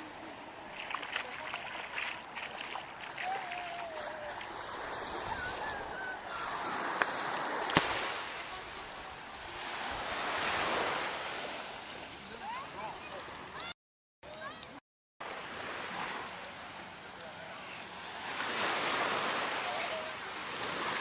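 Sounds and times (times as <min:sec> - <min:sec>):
faint distant calls: 0:00.0 - 0:11.2
surf washing onto beach: 0:00.0 - 0:13.7, 0:15.2 - 0:21.0.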